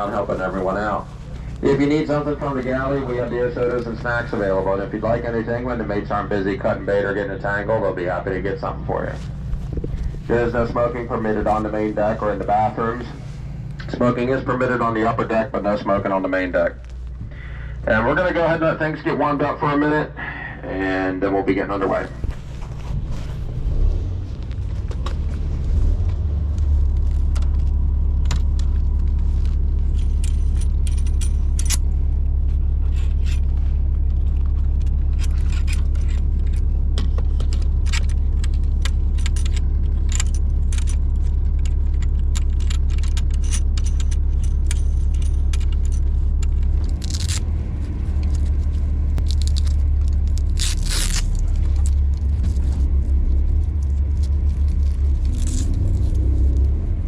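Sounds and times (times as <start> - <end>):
boat engines idling: 0.0 - 57.0
scraping rattles: 22.0 - 57.0
metallic rattles: 27.0 - 56.7.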